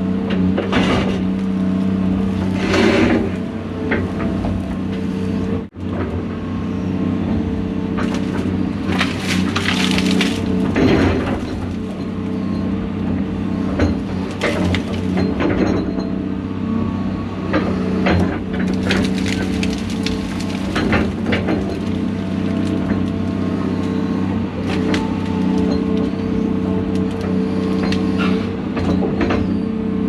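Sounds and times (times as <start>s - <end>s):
excavator diesel engine running: 0.0s - 30.0s
branches cracking and snapping: 0.6s - 5.5s, 7.9s - 12.5s, 13.6s - 15.4s, 18.2s - 28.6s.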